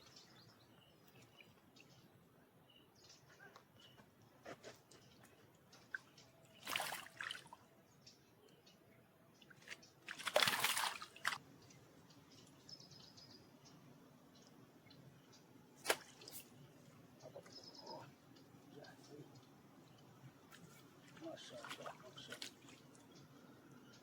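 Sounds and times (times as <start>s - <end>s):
water splashing: 6.6s - 7.6s, 9.5s - 11.4s, 20.6s - 23.0s.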